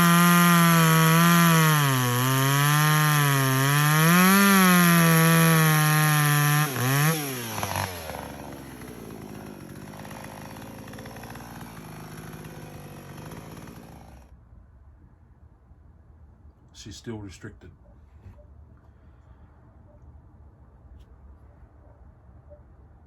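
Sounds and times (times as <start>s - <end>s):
chainsaw running at high revs: 0.0s - 14.3s.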